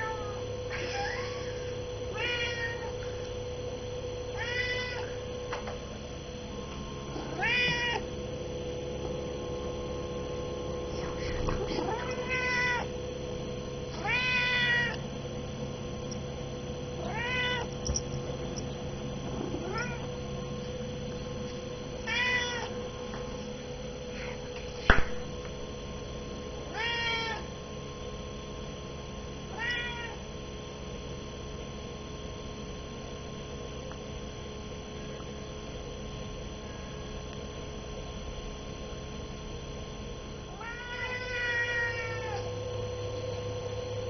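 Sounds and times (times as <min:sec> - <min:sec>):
cat meowing: 0:00.0 - 0:03.0, 0:04.4 - 0:05.2, 0:07.2 - 0:08.1, 0:11.2 - 0:12.9, 0:14.0 - 0:15.0, 0:17.0 - 0:17.7, 0:19.6 - 0:20.1, 0:22.0 - 0:22.8, 0:26.7 - 0:27.5, 0:29.5 - 0:30.2, 0:40.5 - 0:42.5
background hum: 0:00.0 - 0:44.0
sharp knock: 0:24.9 - 0:25.2.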